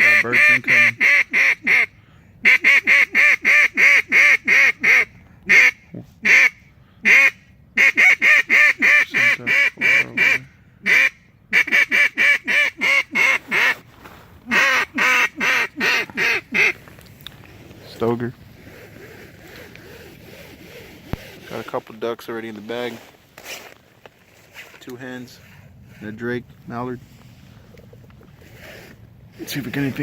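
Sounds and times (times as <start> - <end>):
duck call quacking: 0.0 - 13.8, 14.5 - 16.8.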